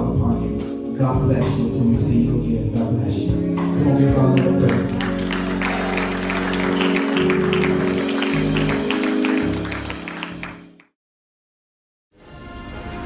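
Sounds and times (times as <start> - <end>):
bass line: 0.0 - 10.8
church praise music: 0.0 - 10.9
organ chords: 0.0 - 10.9
sharp clapping or drum hits: 4.4 - 10.9.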